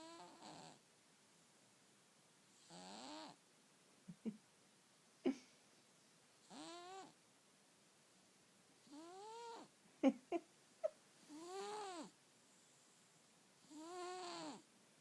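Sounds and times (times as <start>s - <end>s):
cat snoring: 0.0s - 0.8s, 2.6s - 3.4s, 6.4s - 7.2s, 8.8s - 9.7s, 11.2s - 12.9s, 13.6s - 14.6s.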